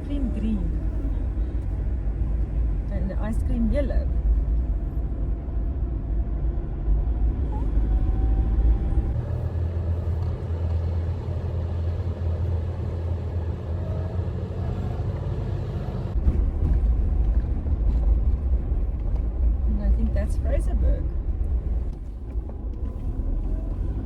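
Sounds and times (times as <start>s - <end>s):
vehicle engine and road rumble: 0.0s - 24.0s.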